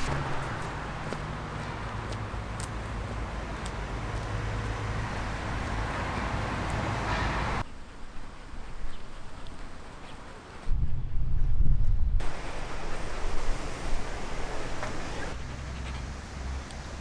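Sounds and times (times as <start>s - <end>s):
distant road traffic rumble: 0.0s - 7.7s, 12.2s - 17.0s.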